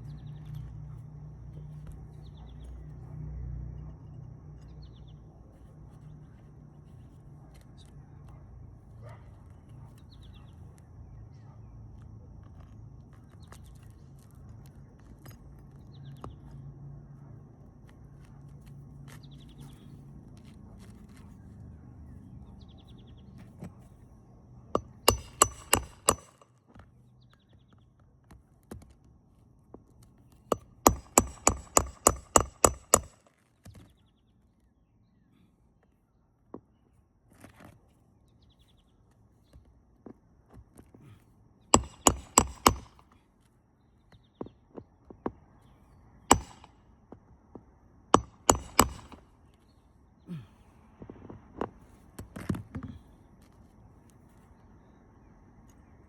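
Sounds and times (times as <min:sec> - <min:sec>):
hammer striking roofing nails: 0:24.8 - 0:26.7, 0:30.5 - 0:33.3, 0:41.8 - 0:43.2, 0:46.3 - 0:46.8, 0:48.2 - 0:49.4.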